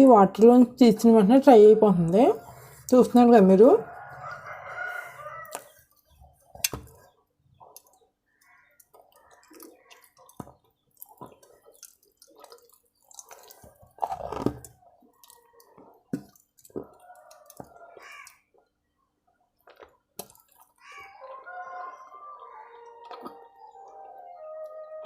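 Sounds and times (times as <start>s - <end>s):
chewing with crisp crunches: 3.9s - 24.2s.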